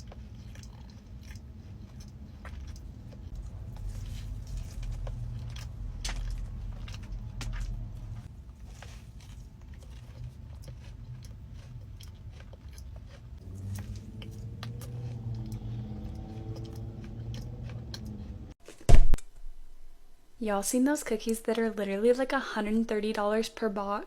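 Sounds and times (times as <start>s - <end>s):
low pitched hum: 0.0s - 18.6s
person chewing and crunching food: 0.0s - 18.6s.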